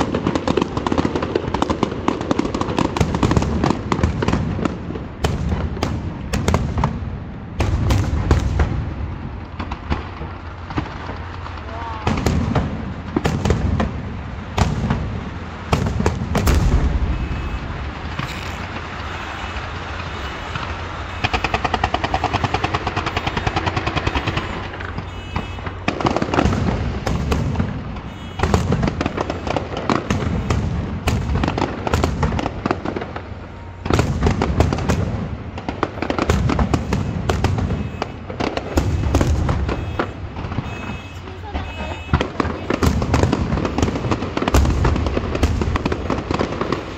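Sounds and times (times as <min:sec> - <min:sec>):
fireworks crackling: 0:00.0 - 0:46.9
fireworks shells bursting: 0:15.8 - 0:46.9.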